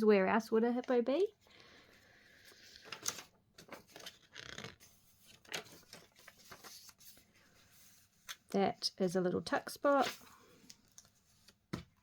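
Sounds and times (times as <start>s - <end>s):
paper rustling: 2.3s - 8.5s.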